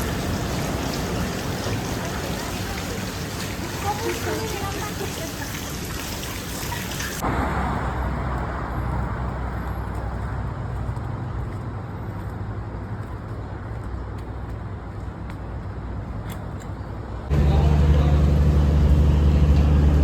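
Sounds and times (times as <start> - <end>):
traffic hiss: 0.0 - 7.9
road traffic rumble: 0.0 - 20.0.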